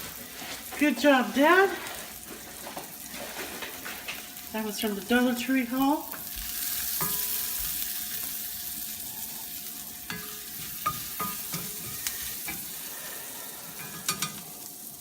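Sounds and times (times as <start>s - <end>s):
onion sizzling in a pan: 0.0s - 15.0s
utensil clinking against pan: 10.1s - 12.6s, 13.8s - 14.5s.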